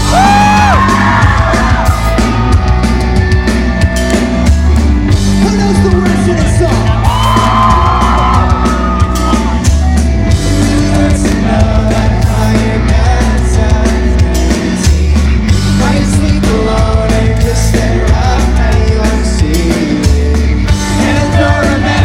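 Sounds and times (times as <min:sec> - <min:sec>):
pop-punk band playing live: 0:00.0 - 0:22.0
lead vocal singing: 0:06.0 - 0:22.0.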